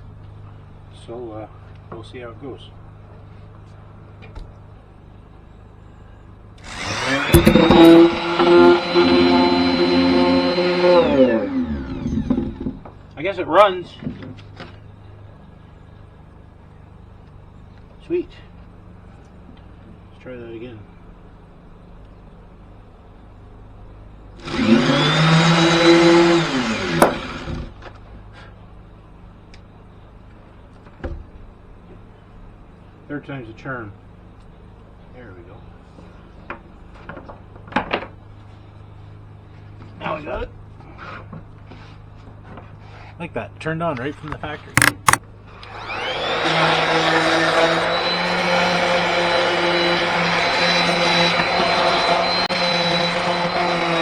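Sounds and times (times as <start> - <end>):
sharp click: 7.4 - 7.9, 44.8 - 45.2.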